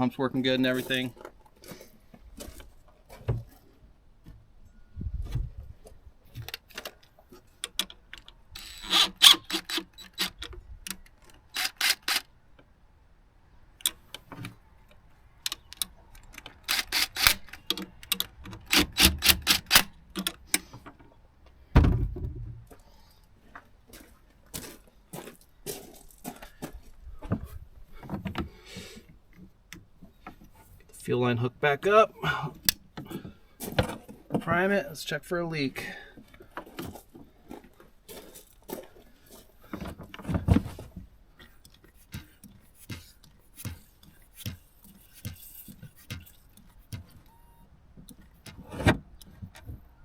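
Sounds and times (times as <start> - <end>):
dull thumps: 21.8 - 22.7, 41.8 - 47.2.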